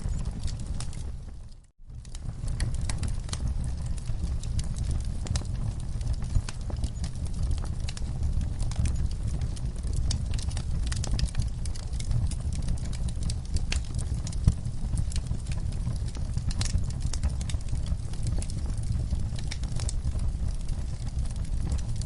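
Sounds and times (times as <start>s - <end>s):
campfire crackling and popping: 0.0s - 22.0s
low rumble of flames: 0.0s - 22.0s.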